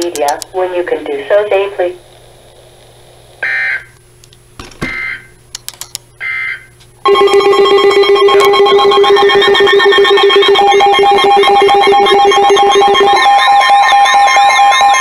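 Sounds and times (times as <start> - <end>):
sharp clicks: 0.0 - 0.5, 5.5 - 6.1
digital data tone bursts: 6.2 - 15.0
synthesizer ringtone tune: 7.1 - 15.0.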